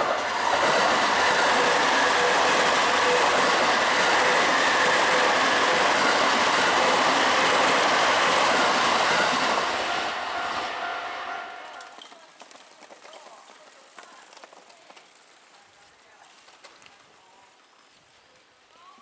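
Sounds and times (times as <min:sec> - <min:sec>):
train passing: 0:00.0 - 0:12.2.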